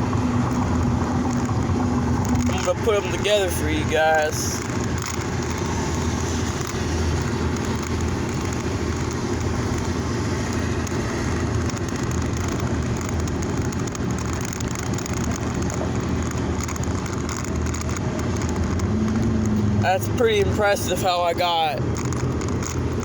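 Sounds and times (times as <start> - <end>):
low rumble: 15.7 - 23.0.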